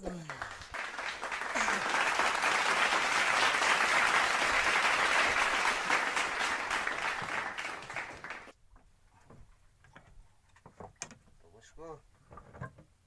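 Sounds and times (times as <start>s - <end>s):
applause: 0.0s - 8.6s.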